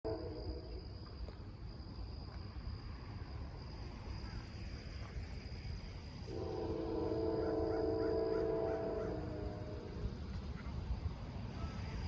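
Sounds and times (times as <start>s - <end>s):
locomotive air horn chord: 0.1s - 0.8s, 6.3s - 10.3s
insects buzzing: 0.1s - 12.0s.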